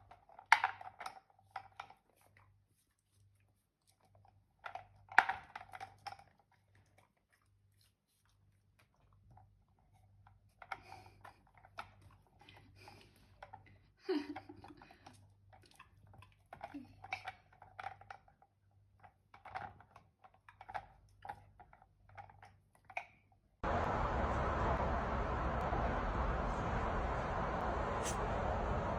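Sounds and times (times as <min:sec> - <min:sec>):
dog chewing and crunching food: 0:00.0 - 0:10.7.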